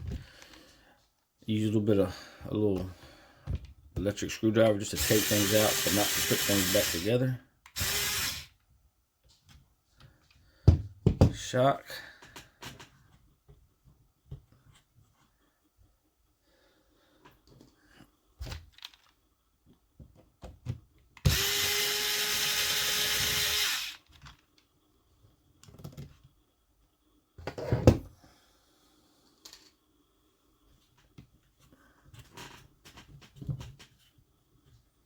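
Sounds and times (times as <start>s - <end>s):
electric screwdriver running: 5.0s - 7.1s, 7.8s - 8.5s, 21.3s - 24.0s
small parts and tools clicking: 18.5s - 19.3s.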